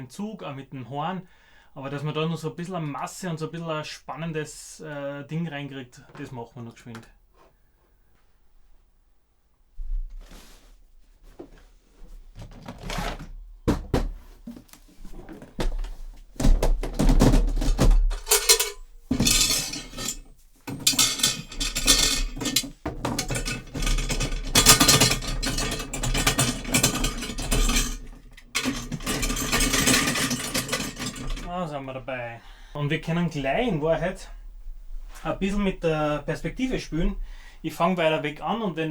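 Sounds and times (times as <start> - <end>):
metal objects rattling and clanking: 15.0 - 31.7.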